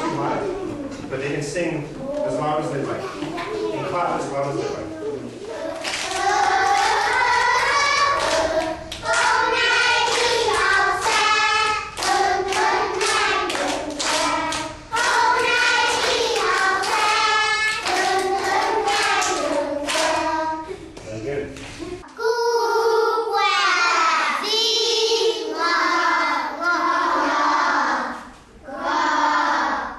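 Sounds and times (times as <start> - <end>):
children singing: 5.2 - 21.0, 22.2 - 29.9
rhythmic clapping: 5.5 - 21.8.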